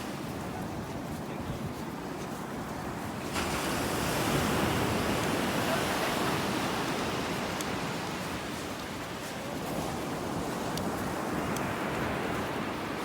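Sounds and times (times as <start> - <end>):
steady rush of surf: 3.2 - 13.0.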